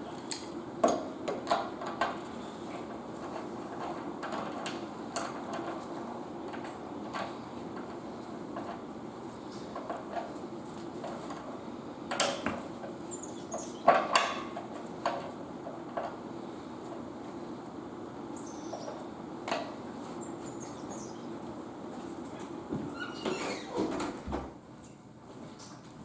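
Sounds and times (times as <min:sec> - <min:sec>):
faint steady hum: 0:00.0 - 0:26.0
knocks and clanks on pipes: 0:13.8 - 0:15.3
high falling squeaks: 0:22.9 - 0:23.9.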